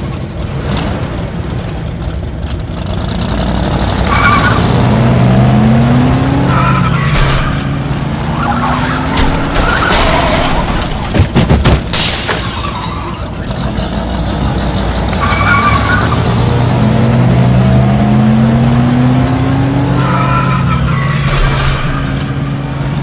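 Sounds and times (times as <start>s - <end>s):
racing car engines revving: 0.0s - 23.0s
tyre squeals: 4.0s - 4.9s, 6.2s - 11.1s, 14.9s - 16.8s, 19.5s - 22.8s.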